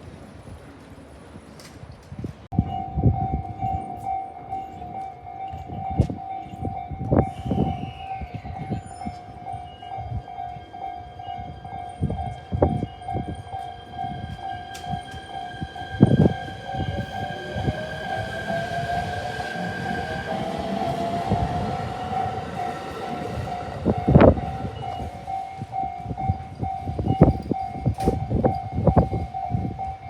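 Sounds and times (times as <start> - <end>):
high whine of electric train: 0.0 - 30.0
level crossing alarm ringing: 2.5 - 30.0.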